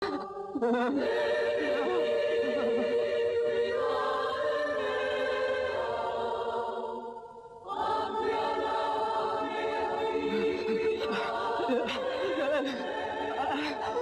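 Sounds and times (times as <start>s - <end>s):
choir singing held chords: 0.0s - 14.0s.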